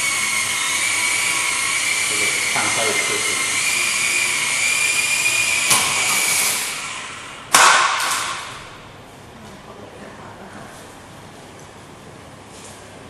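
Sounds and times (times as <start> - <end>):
electric rotor motor whining: 0.0 - 7.5
sharp knock: 7.5 - 8.5.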